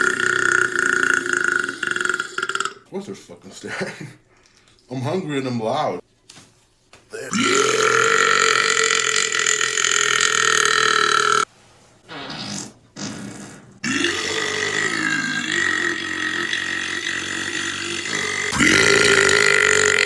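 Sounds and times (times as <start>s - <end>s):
man belching: 0.0s - 2.9s, 7.1s - 11.5s, 13.8s - 20.0s.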